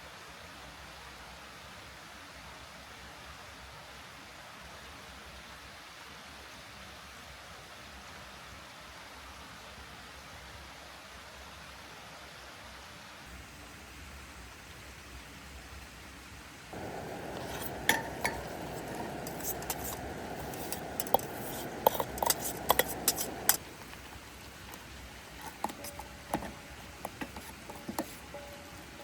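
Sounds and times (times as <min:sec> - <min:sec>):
steady hiss: 0:13.3 - 0:29.0
light sharp clicks and clinks: 0:16.8 - 0:29.0.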